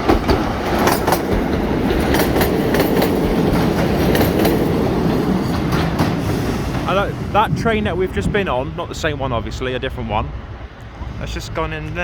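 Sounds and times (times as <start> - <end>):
wheels clicking over rail joints: 0.0 - 7.9
railcar engine rumble: 0.0 - 12.0.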